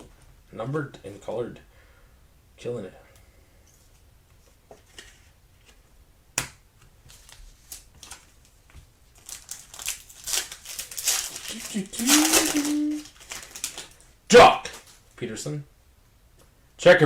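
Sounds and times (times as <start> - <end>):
packaging crinkling: 7.1 - 15.2.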